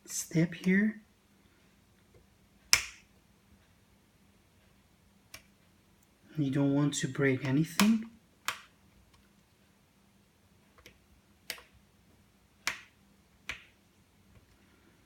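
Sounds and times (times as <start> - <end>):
small sharp clicks: 2.1 - 3.1, 7.4 - 9.3, 10.8 - 11.8.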